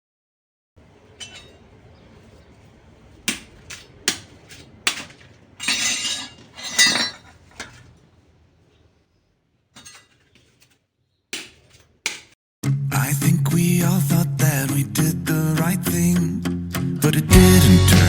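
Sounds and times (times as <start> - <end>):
pots and utensils clattering: 0.8 - 2.6, 3.2 - 8.0, 9.8 - 10.8.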